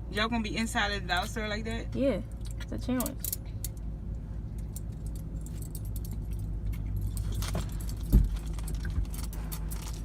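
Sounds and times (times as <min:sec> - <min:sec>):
car interior rumble: 0:00.0 - 0:10.0
metal handcuffs clinking: 0:04.6 - 0:10.0.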